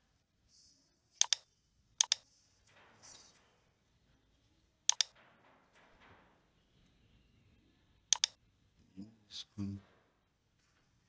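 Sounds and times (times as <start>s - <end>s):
mouse button clicking: 1.2s - 1.4s, 2.0s - 2.2s, 4.9s - 5.1s, 8.1s - 8.4s.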